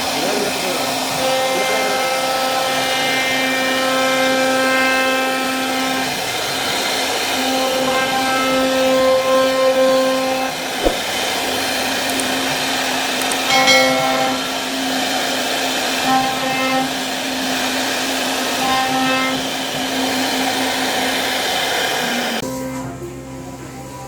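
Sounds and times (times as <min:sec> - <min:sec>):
router spindle whine carving wood: 0:00.0 - 0:22.6
sharp click: 0:12.0 - 0:12.4, 0:13.2 - 0:13.6.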